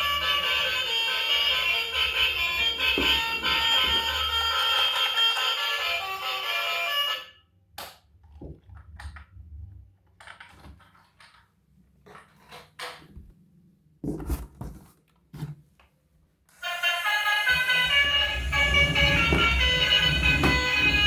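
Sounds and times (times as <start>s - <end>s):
music: 0.0s - 7.4s, 16.6s - 21.0s
objects being handled: 10.0s - 13.3s.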